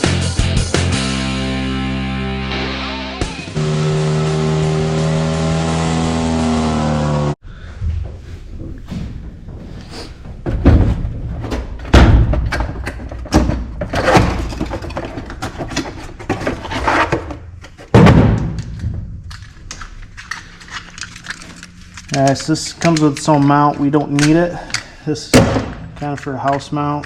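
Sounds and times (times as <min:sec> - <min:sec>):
hard objects thunking and knocking: 0:07.8 - 0:26.7.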